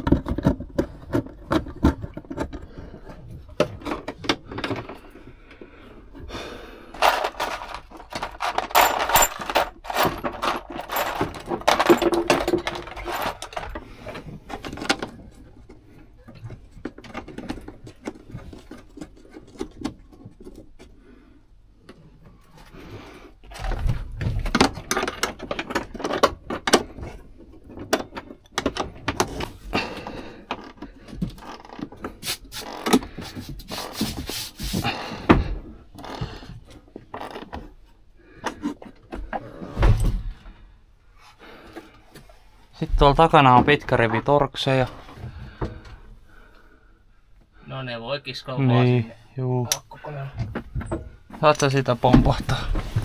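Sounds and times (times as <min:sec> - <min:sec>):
tools clattering and scraping: 0:00.0 - 0:21.0, 0:22.4 - 0:40.4.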